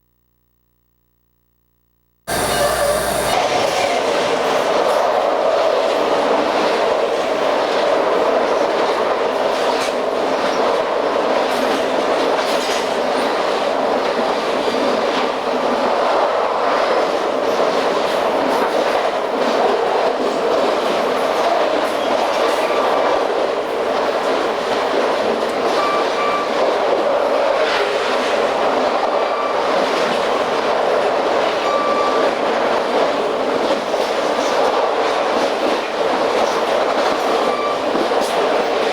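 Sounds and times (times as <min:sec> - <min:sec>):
wheel squeals: 0:02.3 - 0:03.4
train rumbling on track: 0:02.3 - 0:38.9.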